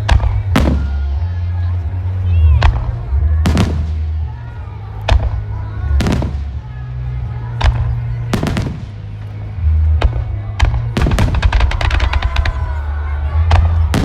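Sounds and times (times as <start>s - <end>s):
firework booms: 0.0s - 1.2s, 2.6s - 4.2s, 10.0s - 12.7s, 13.5s - 14.0s
firework cracks: 10.0s - 12.8s, 13.5s - 14.0s.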